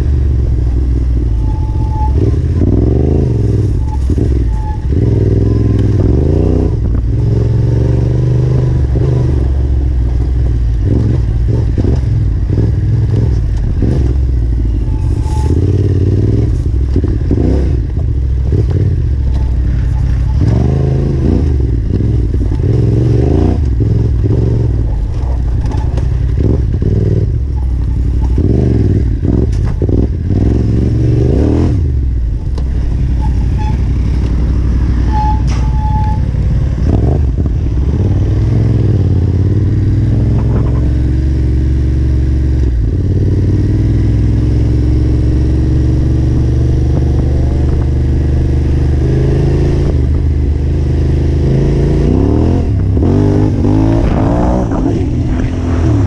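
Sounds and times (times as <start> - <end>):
motorcycle engine revving: 0.0 - 56.0
motorcycle knocks and rattles: 21.6 - 30.5, 39.3 - 41.5.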